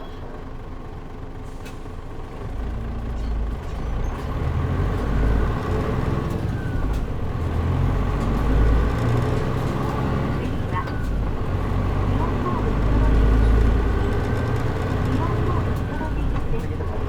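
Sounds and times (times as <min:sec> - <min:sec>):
bus engine rumble: 0:00.0 - 0:17.0.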